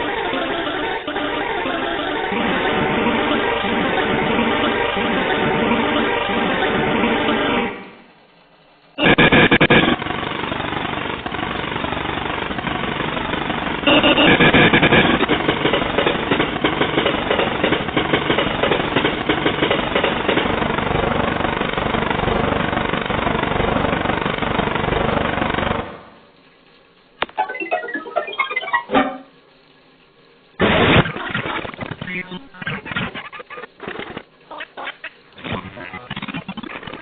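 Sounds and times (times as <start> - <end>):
rapid clattering noise: 9.0 - 27.4, 30.6 - 37.0.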